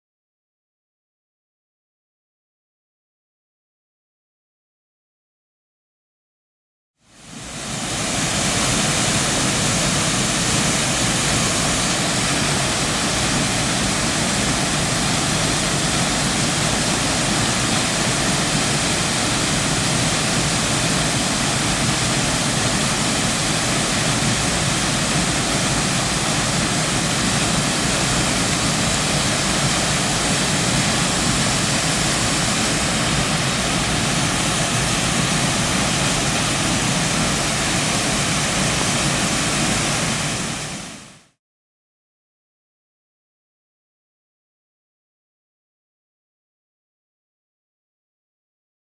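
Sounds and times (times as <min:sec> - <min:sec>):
waterfall rushing into pool: 0:07.0 - 0:41.4.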